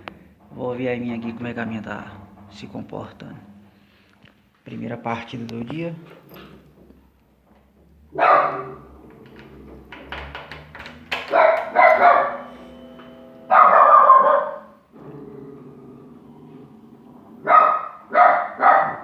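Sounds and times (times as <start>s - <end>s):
dog barking: 8.2s - 8.8s, 11.3s - 12.4s, 13.5s - 14.8s, 17.4s - 19.0s.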